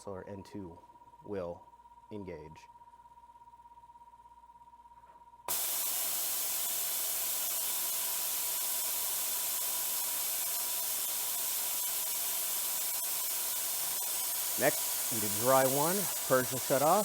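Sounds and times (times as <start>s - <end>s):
hiss of purge gas: 5.5s - 17.0s.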